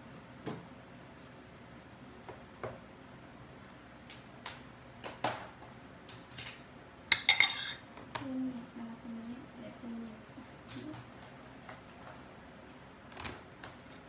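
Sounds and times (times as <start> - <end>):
kitchen utensils knocking: 7.1 - 7.8.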